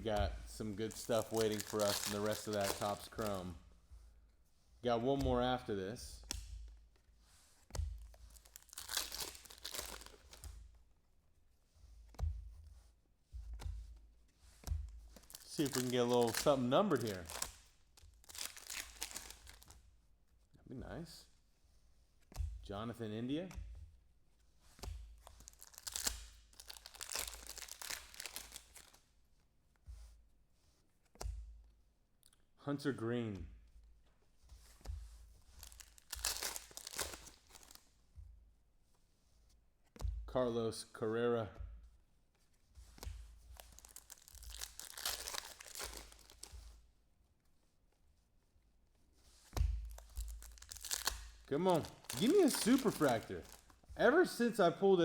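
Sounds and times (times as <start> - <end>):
foil wrapper crinkling: 0.0 - 3.6, 8.2 - 10.5, 15.2 - 19.7, 25.3 - 29.0, 35.6 - 37.8, 43.6 - 46.6, 49.8 - 54.7.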